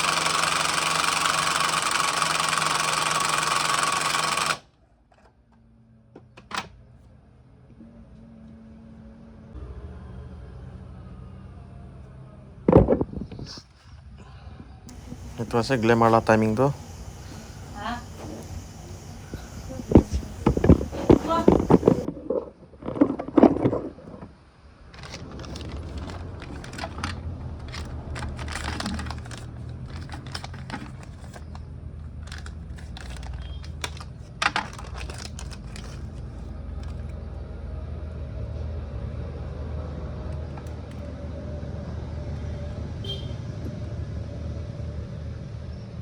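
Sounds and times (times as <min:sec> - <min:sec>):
motorcycle engine running: 0:14.9 - 0:22.1
sharp engine clicks: 0:14.9 - 0:22.1.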